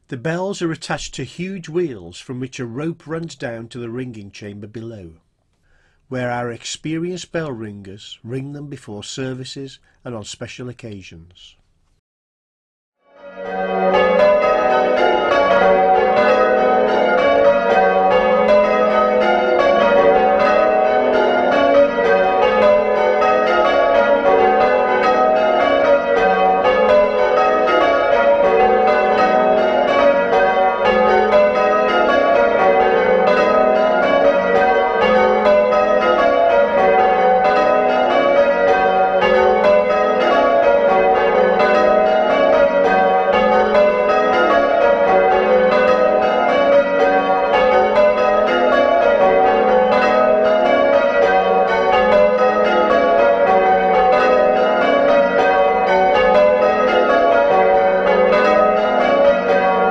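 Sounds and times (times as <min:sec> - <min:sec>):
church bells change ringing: 0:13.1 - 0:59.9.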